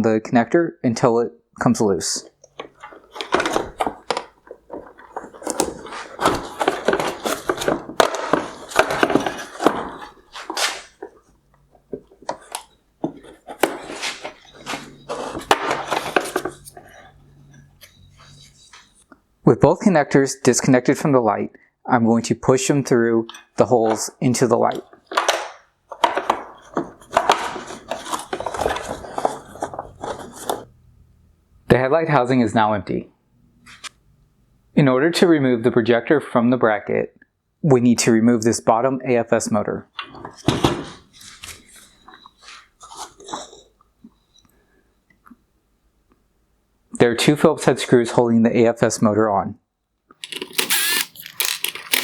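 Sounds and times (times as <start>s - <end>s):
plastic connectors clicking and scraping: 50.2s - 52.0s
screwdriver prying plastic clip: 50.2s - 52.0s.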